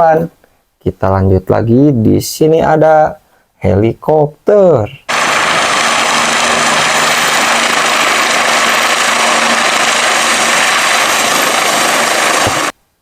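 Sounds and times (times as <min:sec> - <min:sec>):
helicopter engine and rotor whir: 0:05.1 - 0:12.7.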